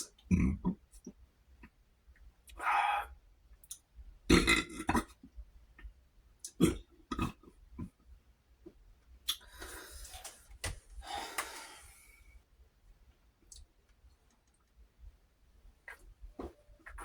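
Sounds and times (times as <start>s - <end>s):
breathy exhale: 11.0s - 12.4s.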